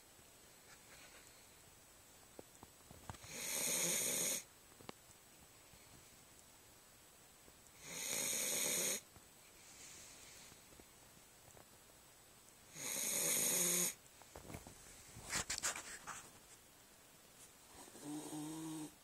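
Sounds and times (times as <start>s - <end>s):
pet snoring: 3.2s - 4.5s, 7.8s - 9.0s, 12.7s - 14.0s, 17.8s - 19.0s
faint breath: 9.5s - 10.8s.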